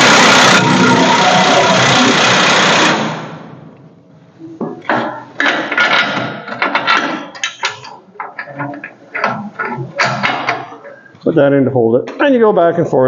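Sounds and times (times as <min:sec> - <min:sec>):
steady running noise: 0:00.0 - 0:03.4
metal hardware clanking: 0:04.8 - 0:11.1.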